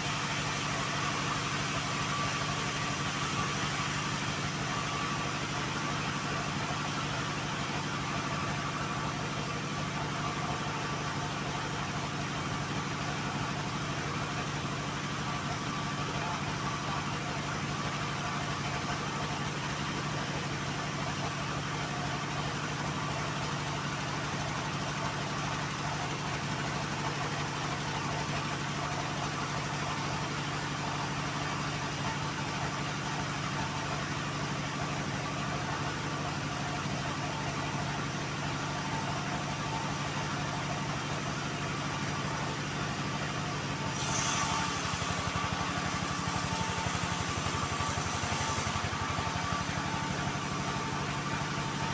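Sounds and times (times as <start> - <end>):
sawmill humming: 42.5 - 51.9.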